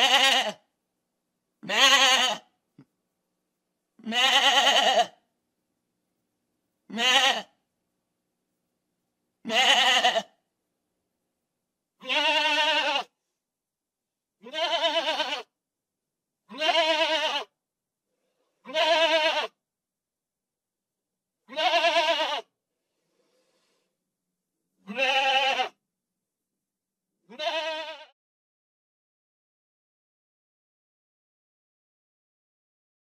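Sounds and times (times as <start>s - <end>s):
goat bleating: 0.0s - 0.6s, 1.6s - 2.5s, 4.0s - 5.2s, 6.9s - 7.6s, 9.4s - 10.4s, 12.0s - 13.1s, 14.4s - 15.5s, 16.5s - 17.6s, 18.6s - 19.6s, 21.5s - 22.5s, 24.8s - 25.8s, 27.3s - 28.2s.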